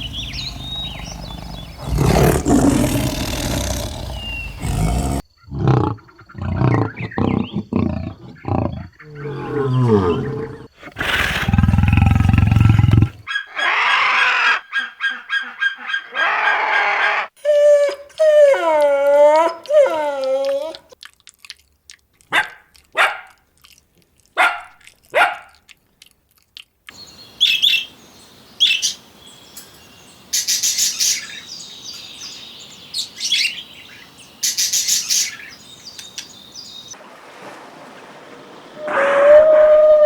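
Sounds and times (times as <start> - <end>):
birds chirping: 0.0 - 13.9
long steady animal call: 0.0 - 17.9
animal yelps or barks: 13.3 - 20.9, 38.8 - 40.0.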